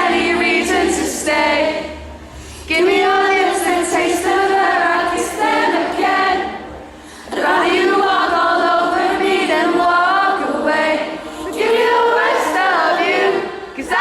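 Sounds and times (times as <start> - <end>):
crowd singing unaccompanied: 0.0 - 14.0.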